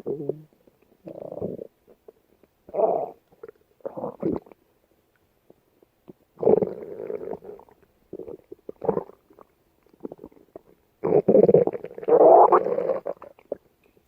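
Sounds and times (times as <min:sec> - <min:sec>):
stomach growling and gurgling: 0:00.0 - 0:04.6, 0:06.1 - 0:13.7.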